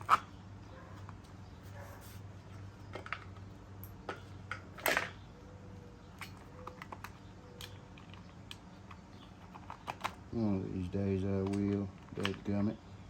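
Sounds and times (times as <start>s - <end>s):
low steady hum: 0.0s - 13.0s
clicks of engine parts and tools: 2.8s - 5.2s, 6.1s - 10.3s, 11.2s - 12.6s.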